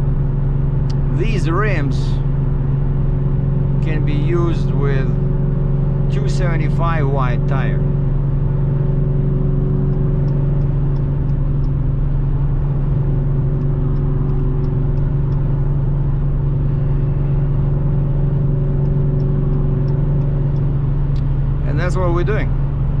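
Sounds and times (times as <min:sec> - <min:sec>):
car engine low drone: 0:00.0 - 0:23.0
road and tyre noise: 0:00.0 - 0:23.0.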